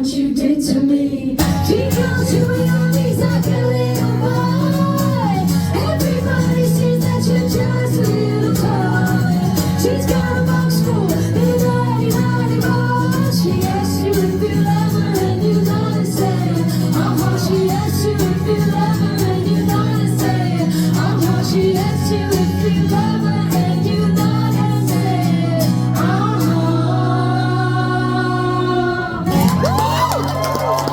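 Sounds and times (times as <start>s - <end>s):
woman singing: 0.0s - 30.9s
live band playing pop-rock: 1.4s - 26.6s.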